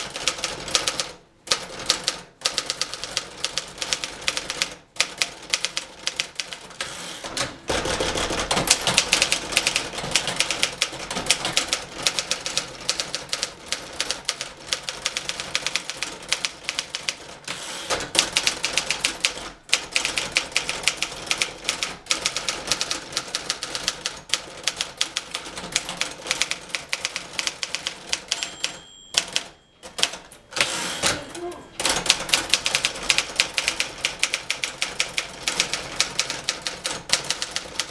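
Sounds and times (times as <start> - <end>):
typewriter keystroke clacks: 7.4 - 30.3, 31.8 - 37.9
typewriter bell ringing: 28.1 - 30.3.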